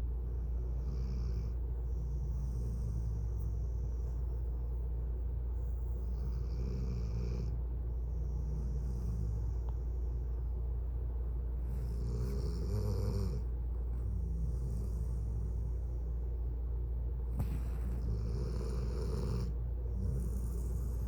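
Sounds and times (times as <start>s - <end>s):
steady low hum: 0.0s - 21.0s
dog snoring: 0.4s - 4.3s, 5.6s - 9.8s, 11.6s - 16.0s, 17.3s - 21.0s.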